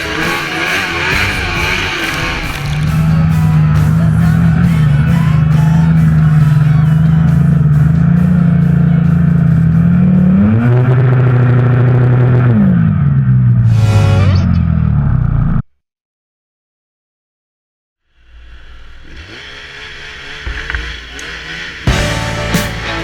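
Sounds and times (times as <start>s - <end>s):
music: 0.0s - 10.5s, 21.8s - 23.0s
snowmobile engine revving: 0.0s - 14.5s, 18.5s - 23.0s.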